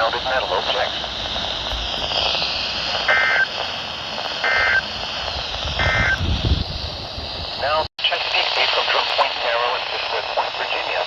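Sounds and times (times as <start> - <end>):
radio hiss: 0.0 - 11.0
digital data tone bursts: 3.1 - 3.6, 4.4 - 5.0, 5.7 - 6.2.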